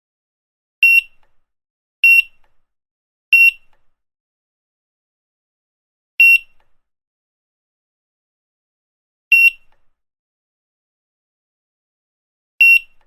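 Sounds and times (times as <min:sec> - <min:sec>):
barcode scanner beeps: 0:00.8 - 0:01.2, 0:02.0 - 0:02.4, 0:03.4 - 0:03.8, 0:06.2 - 0:06.6, 0:09.3 - 0:09.7, 0:12.6 - 0:13.0.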